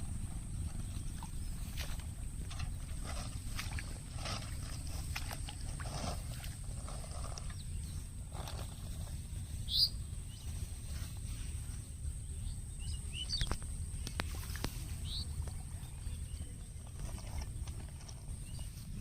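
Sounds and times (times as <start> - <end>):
wind rumble on microphone: 0.0 - 19.0
bird chirps: 7.4 - 11.4, 12.2 - 17.7.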